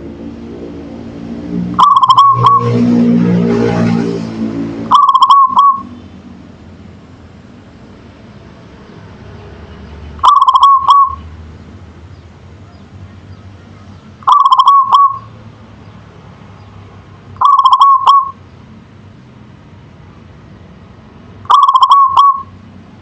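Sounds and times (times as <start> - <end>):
dove staccato cooing: 1.8 - 2.8, 4.9 - 5.8, 10.2 - 11.2, 13.8 - 15.3, 17.4 - 18.4, 21.5 - 22.5.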